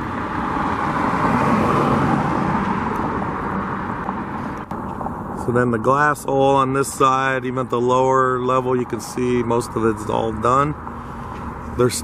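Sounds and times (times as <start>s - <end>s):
vehicle passing close by: 0.0s - 5.1s.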